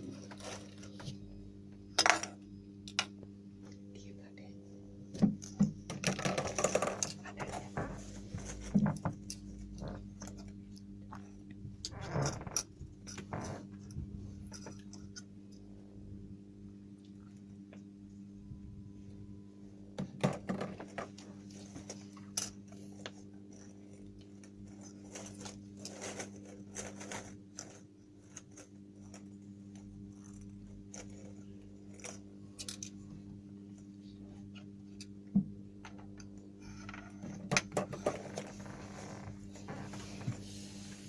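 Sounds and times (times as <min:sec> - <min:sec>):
low electrical hum: 0:00.0 - 0:41.0
objects clicking and clattering: 0:05.2 - 0:10.5
faint steady tone: 0:16.0 - 0:20.0.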